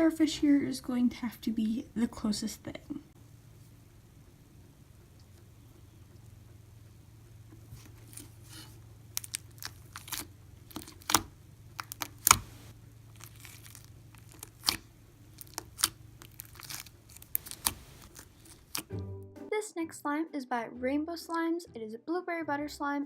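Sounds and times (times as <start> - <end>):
slime popping and crackling: 7.8 - 18.9.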